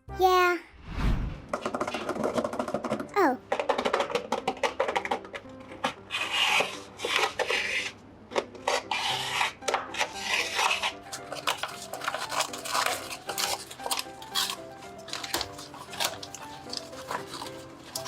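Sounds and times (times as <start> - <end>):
background music: 0.0 - 0.7, 1.5 - 18.0
paper rubbed and scraped: 5.8 - 8.0, 8.6 - 13.7.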